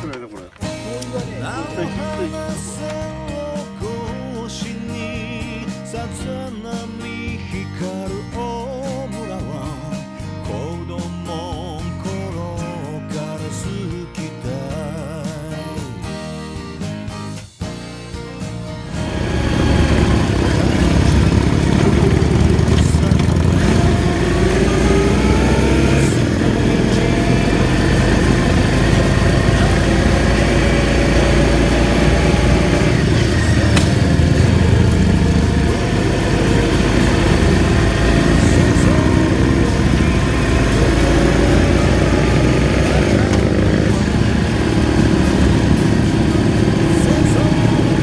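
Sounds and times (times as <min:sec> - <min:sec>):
motorcycle engine revving: 0:18.8 - 0:48.0.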